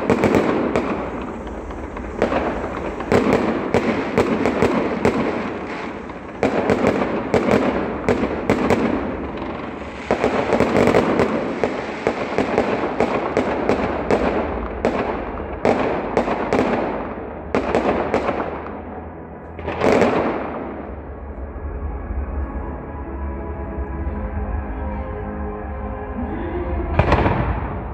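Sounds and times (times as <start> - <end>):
firework shells bursting: 0.0 - 17.0
firework crackling: 0.0 - 18.8, 19.6 - 21.2.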